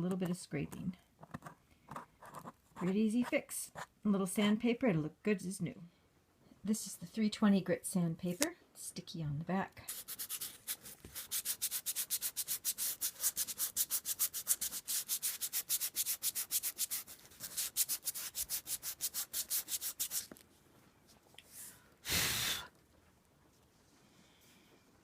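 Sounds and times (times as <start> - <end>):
sandpaper rubbing on paper: 9.9 - 20.3.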